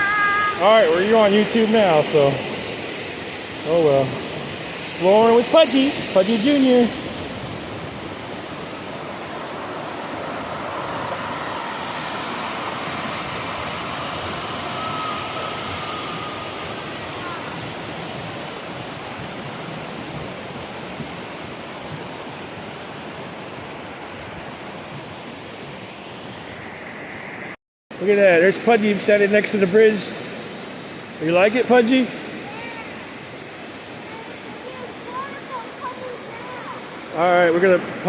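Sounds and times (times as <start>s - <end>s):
waterfall rushing: 0.0s - 24.8s, 28.4s - 38.0s.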